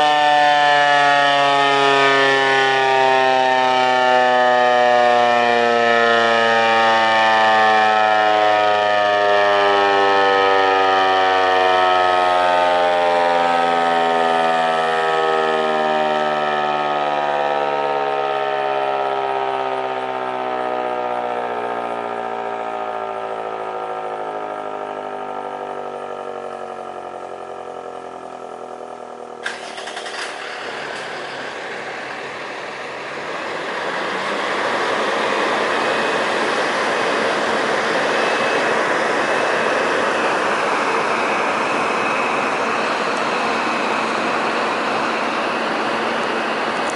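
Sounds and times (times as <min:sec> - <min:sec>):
siren winding down: 0:00.0 - 0:46.9
steady rushing noise: 0:30.4 - 0:46.9.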